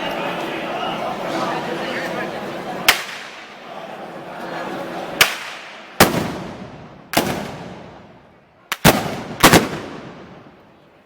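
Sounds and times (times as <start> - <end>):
blunderbuss shots echoing: 5.2 - 10.6.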